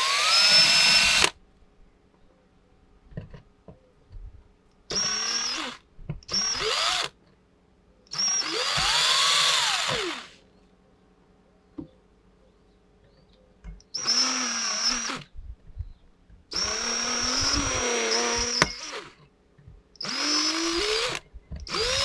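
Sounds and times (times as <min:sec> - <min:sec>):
power drill drilling: 0:00.0 - 0:01.3, 0:04.9 - 0:07.1, 0:08.1 - 0:10.4, 0:14.0 - 0:15.2, 0:16.5 - 0:19.2, 0:20.0 - 0:22.0.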